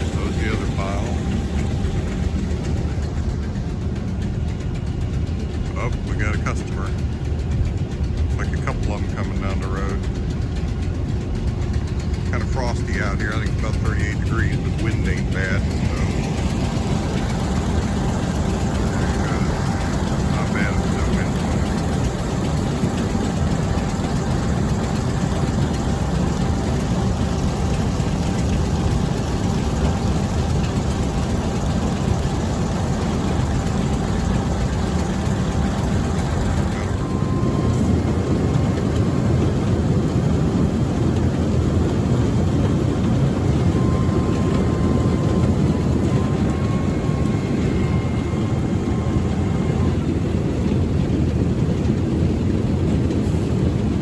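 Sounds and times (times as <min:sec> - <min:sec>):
diesel engines rumbling: 0:00.0 - 0:54.0.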